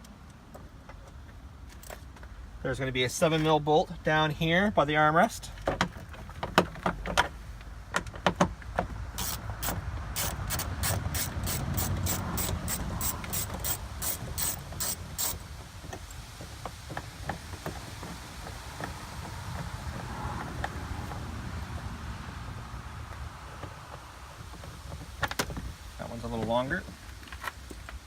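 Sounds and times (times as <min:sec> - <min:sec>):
socket ratchet clicking: 0:09.2 - 0:15.4.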